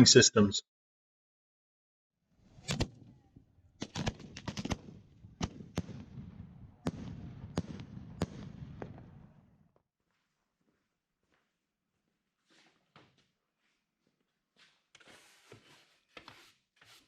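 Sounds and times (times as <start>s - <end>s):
fireworks bangs: 2.5s - 9.7s.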